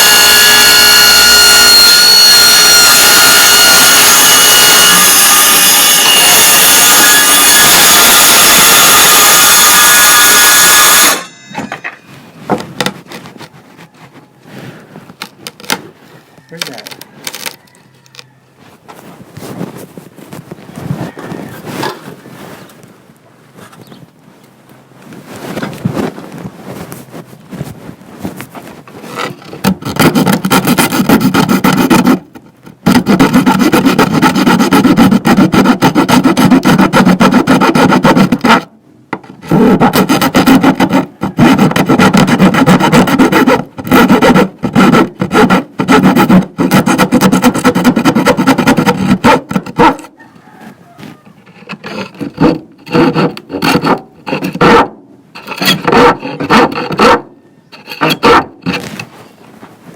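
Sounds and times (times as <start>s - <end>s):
power saw cutting plywood: 0.0s - 13.2s, 29.1s - 50.2s, 51.5s - 59.1s.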